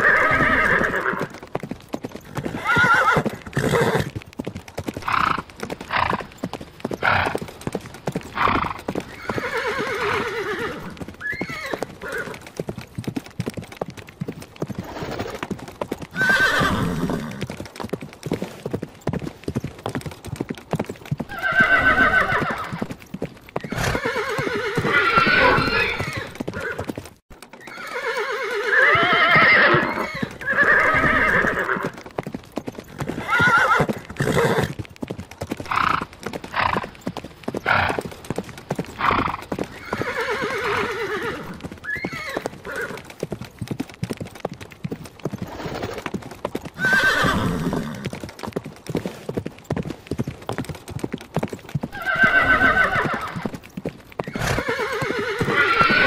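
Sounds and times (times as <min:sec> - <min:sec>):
horse whinnying: 0:00.0 - 0:01.4, 0:02.2 - 0:04.2, 0:05.0 - 0:06.3, 0:07.0 - 0:07.4, 0:08.3 - 0:12.4, 0:16.1 - 0:17.5, 0:21.3 - 0:23.0, 0:23.6 - 0:27.0, 0:27.6 - 0:32.0, 0:32.8 - 0:34.8, 0:35.7 - 0:37.0, 0:37.6 - 0:38.1, 0:38.9 - 0:43.1, 0:46.8 - 0:48.2, 0:51.9 - 0:53.6, 0:54.2 - 0:56.0
hoof clip-clops: 0:00.0 - 0:56.0.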